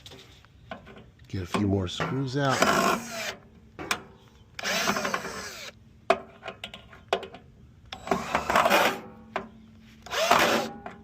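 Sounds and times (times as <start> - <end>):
cordless drill running: 4.6 - 5.7, 10.1 - 10.7.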